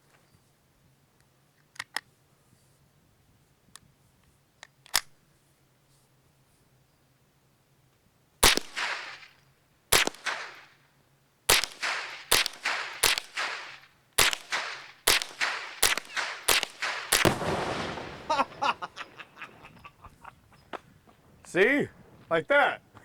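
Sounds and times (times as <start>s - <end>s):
gunshots: 9.9s - 10.6s, 11.5s - 19.2s
exploding target: 15.4s - 19.1s.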